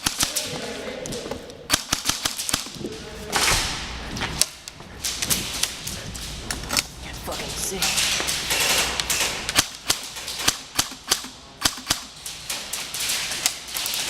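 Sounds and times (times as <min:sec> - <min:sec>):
airsoft guns firing: 0:00.0 - 0:05.9, 0:07.8 - 0:14.0.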